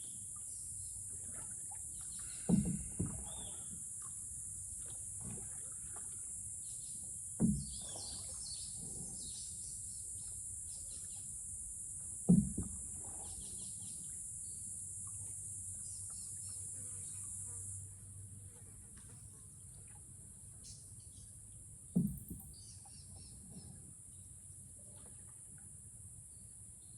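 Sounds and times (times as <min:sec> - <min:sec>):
paddle knocking against canoe: 0:01.2 - 0:09.5, 0:11.9 - 0:14.0, 0:22.0 - 0:22.5
bird calls: 0:02.0 - 0:03.8.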